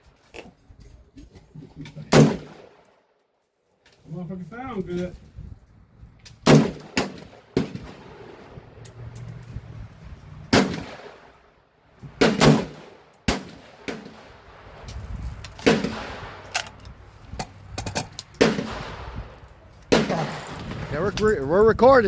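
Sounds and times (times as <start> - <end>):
loud gunshots with echo: 6.4 - 8.4, 12.2 - 14.4, 18.4 - 19.3.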